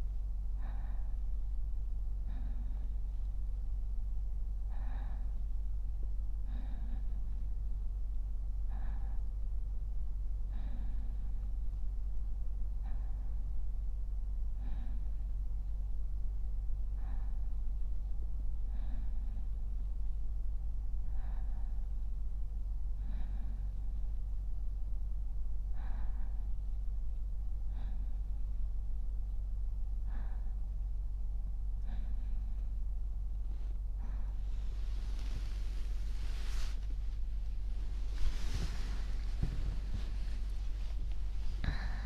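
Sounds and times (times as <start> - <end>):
steady low hum: 0.0 - 42.0
man breathing in sleep: 0.4 - 42.0.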